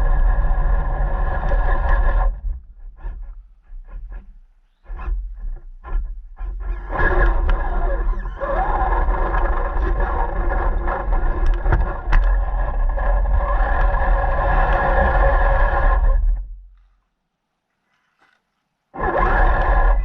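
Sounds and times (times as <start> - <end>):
rc car motor whining: 6.4 - 16.5, 19.0 - 20.0.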